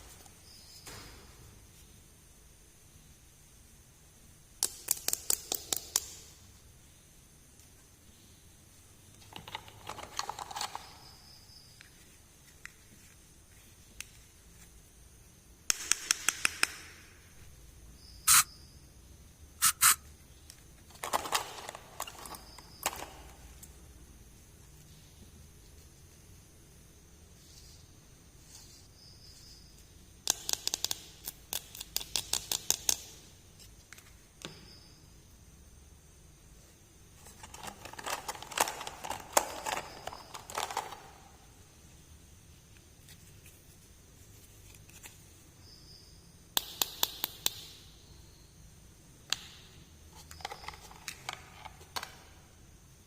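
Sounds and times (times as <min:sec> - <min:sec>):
plastic pieces clicking and tapping: 0:04.6 - 0:06.2, 0:15.7 - 0:16.9, 0:19.6 - 0:23.7, 0:30.2 - 0:33.2, 0:37.3 - 0:41.2, 0:46.6 - 0:47.7
packaging scratching and rustling: 0:37.2 - 0:41.2.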